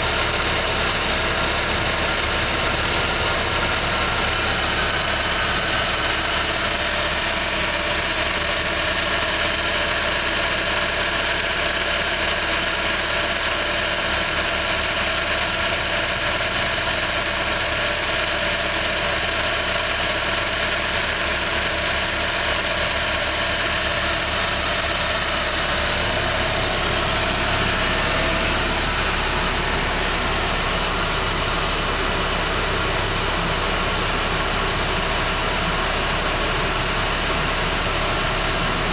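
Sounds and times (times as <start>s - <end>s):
car engine idling: 0.0s - 38.9s.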